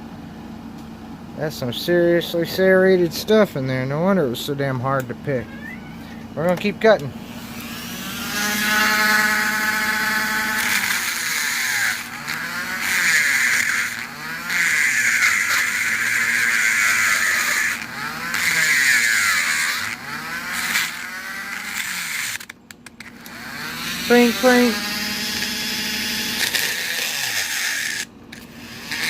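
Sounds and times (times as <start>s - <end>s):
power tool grinding metal: 7.2s - 29.0s.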